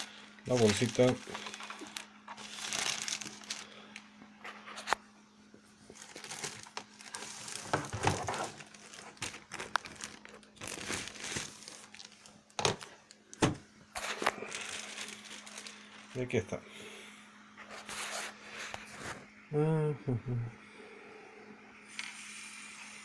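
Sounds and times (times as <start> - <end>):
plastic bag crinkling: 0.0 - 5.0, 5.8 - 16.3.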